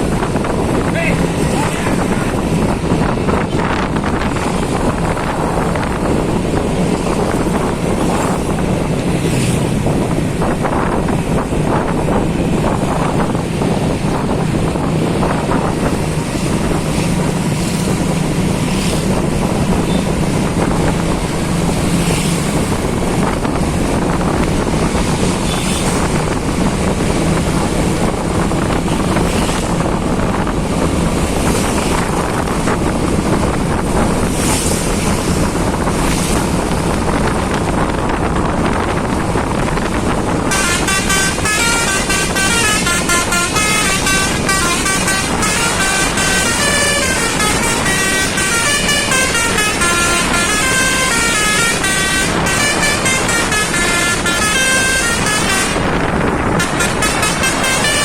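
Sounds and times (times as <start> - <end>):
road noise: 0.0 - 58.0
rushing wind: 0.0 - 58.0
low engine drone: 35.1 - 58.0
bus horn playing melody: 40.3 - 58.0.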